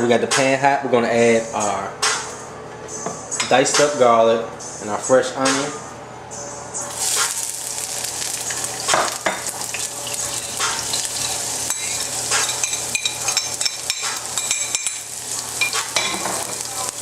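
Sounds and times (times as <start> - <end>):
garlic and onion sizzling in oil: 6.9 - 17.0.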